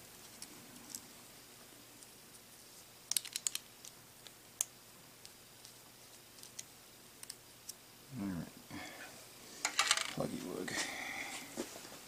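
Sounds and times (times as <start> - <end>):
small plastic and metal parts clicking: 3.1 - 5.8.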